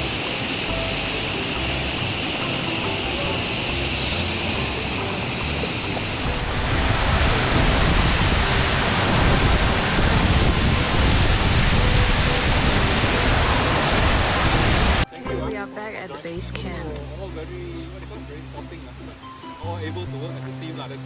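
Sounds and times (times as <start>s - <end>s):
waterfall rushing: 0.0s - 15.1s.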